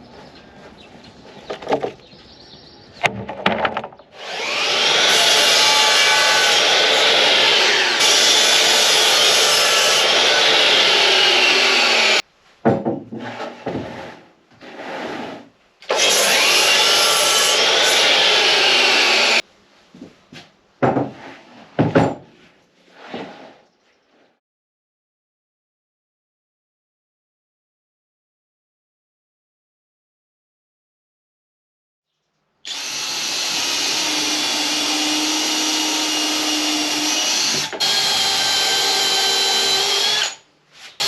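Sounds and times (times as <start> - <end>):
knocks of wood being handled: 0.1 - 2.2, 3.0 - 4.0, 12.6 - 14.0, 19.9 - 22.4
electric power saw cutting wood: 4.2 - 12.2, 15.8 - 19.4, 32.7 - 40.4.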